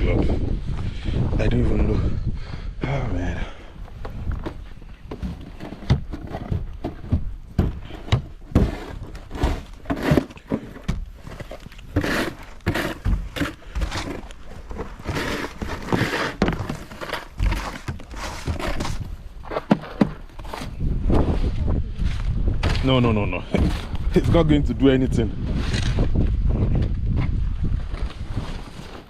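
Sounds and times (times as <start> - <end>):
crunching and scraping in snow: 4.6 - 29.0.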